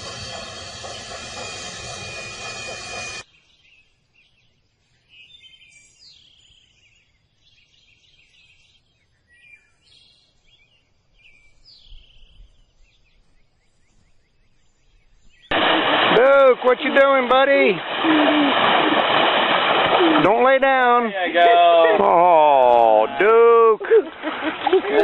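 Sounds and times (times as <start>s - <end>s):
faint bird song: 3.2s - 15.5s.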